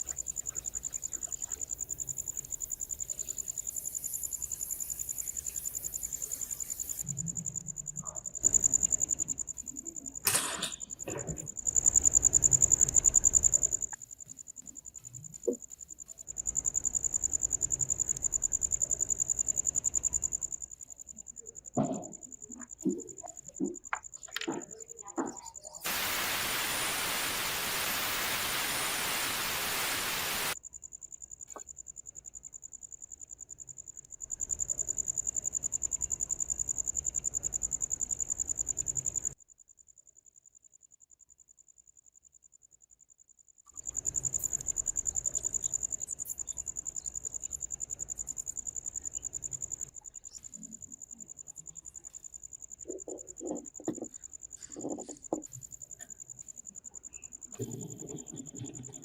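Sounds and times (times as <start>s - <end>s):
high-pitched cricket chirping: 0.0s - 59.0s
loud steady hiss: 25.8s - 30.6s.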